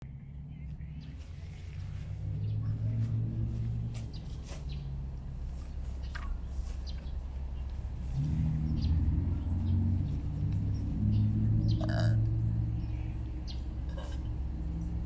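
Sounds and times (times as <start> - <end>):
birds chirping: 0.1 - 15.0
person burping: 11.8 - 12.3.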